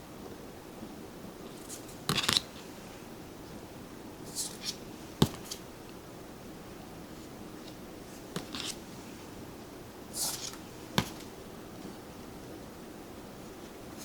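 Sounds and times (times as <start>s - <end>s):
cards sliding swishes: 4.2s - 5.6s, 7.7s - 9.3s, 10.1s - 11.3s
card tap: 10.3s - 11.3s.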